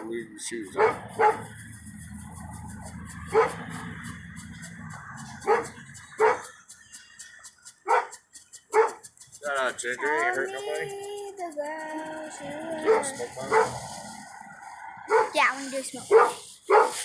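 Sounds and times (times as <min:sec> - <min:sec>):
dog barking: 0:00.7 - 0:01.6, 0:03.2 - 0:03.9, 0:05.4 - 0:06.5, 0:07.8 - 0:09.0, 0:12.8 - 0:13.8, 0:15.1 - 0:15.4, 0:16.0 - 0:17.0.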